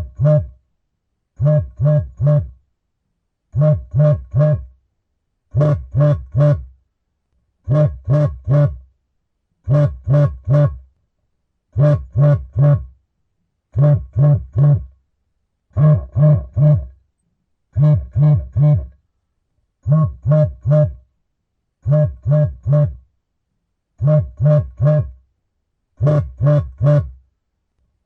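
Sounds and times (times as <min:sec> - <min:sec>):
phone vibrating buzzes: 0:00.0 - 0:00.6, 0:01.4 - 0:02.6, 0:03.6 - 0:04.7, 0:05.5 - 0:06.7, 0:07.7 - 0:08.9, 0:09.7 - 0:10.8, 0:11.8 - 0:12.9, 0:13.8 - 0:14.9, 0:15.8 - 0:17.0, 0:17.7 - 0:18.9, 0:19.8 - 0:21.0, 0:21.8 - 0:23.0, 0:26.0 - 0:27.2.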